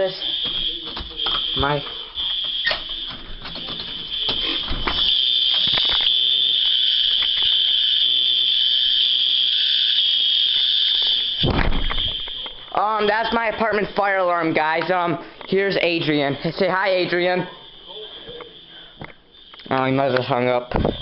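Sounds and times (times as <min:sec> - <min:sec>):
fire alarm high-pitched tone: 0:00.0 - 0:21.0.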